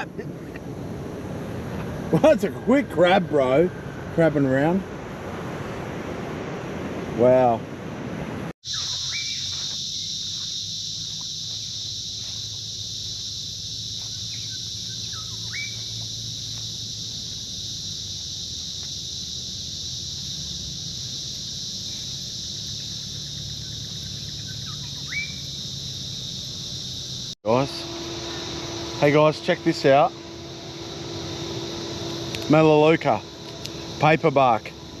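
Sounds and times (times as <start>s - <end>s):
high-pitched insect chorus: 0.0s - 5.9s, 8.6s - 35.0s
bird upward-sweeping call: 8.7s - 10.1s, 14.3s - 15.9s, 24.3s - 25.5s
low steady hum: 22.3s - 35.0s.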